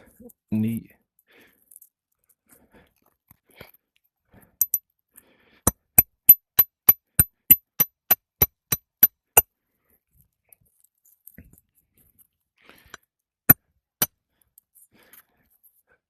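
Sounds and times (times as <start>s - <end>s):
hammer striking metal: 5.7s - 9.1s.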